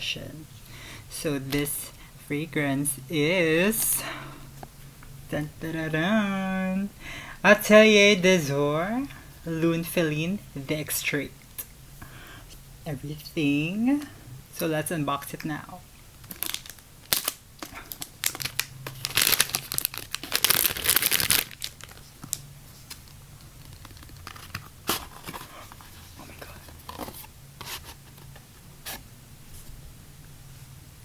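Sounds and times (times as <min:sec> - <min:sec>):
packaging tearing and crinkling: 0:16.2 - 0:25.5.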